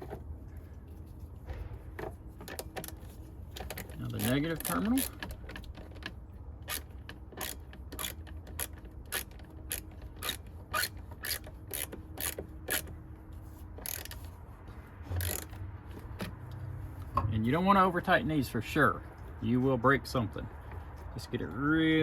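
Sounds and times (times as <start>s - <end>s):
hand ratchet clicking: 3.6s - 13.0s, 13.8s - 14.3s, 15.2s - 15.6s.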